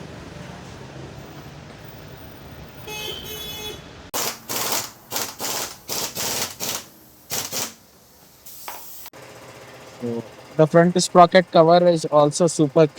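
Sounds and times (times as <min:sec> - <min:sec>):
pneumatic impact wrench rattling: 0:04.2 - 0:10.6.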